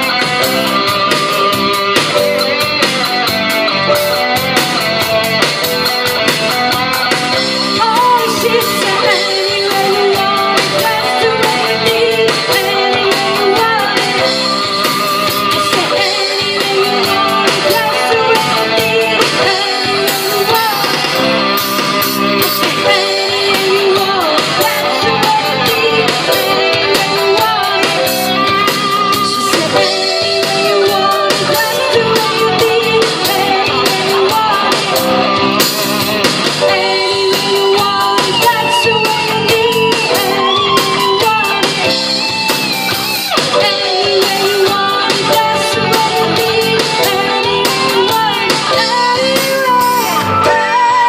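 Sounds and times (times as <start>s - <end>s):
electric guitar lead bending notes: 0.0s - 51.0s
rock band playing: 0.0s - 51.0s.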